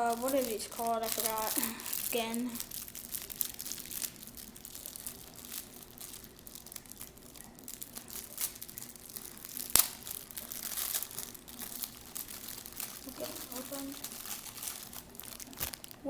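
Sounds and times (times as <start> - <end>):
plastic packaging crinkling and tearing: 0.0 - 16.0.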